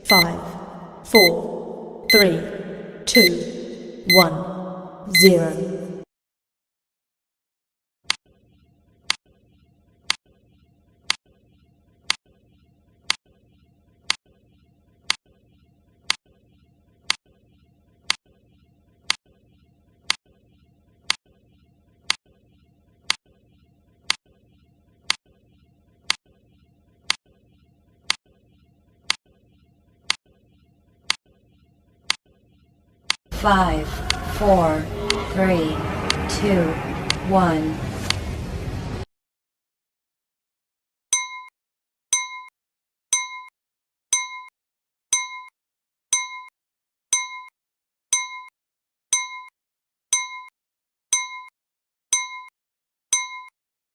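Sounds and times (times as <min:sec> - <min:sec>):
clock ticking: 0:00.1 - 0:00.3, 0:02.1 - 0:02.3.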